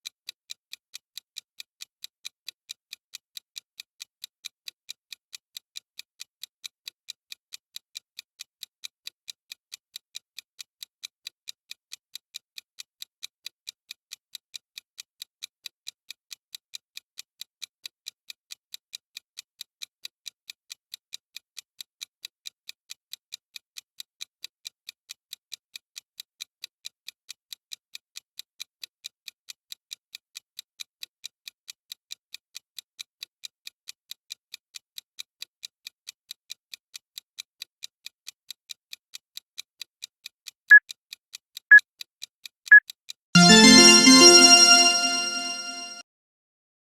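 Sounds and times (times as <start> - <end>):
countdown timer ticking: 43.4 - 46.0.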